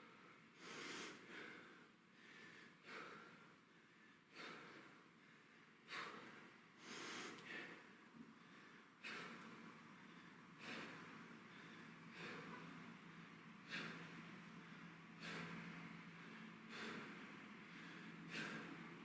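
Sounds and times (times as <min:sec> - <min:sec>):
man breathing hard: 0:00.0 - 0:19.0.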